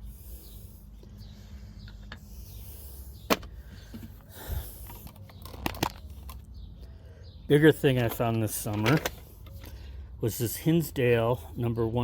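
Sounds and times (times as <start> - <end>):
hand tools handled and set down: 4.8 - 6.4, 8.0 - 9.8.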